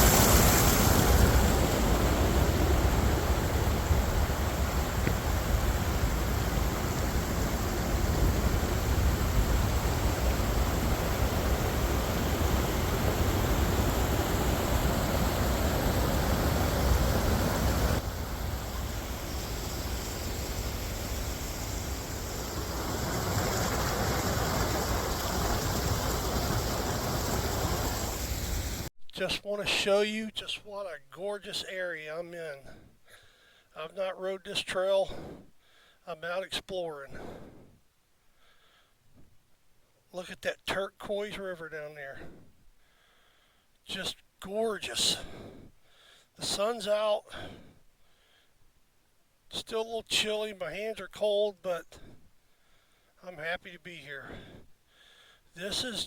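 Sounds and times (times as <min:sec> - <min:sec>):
rushing wind: 0:00.0 - 0:28.9.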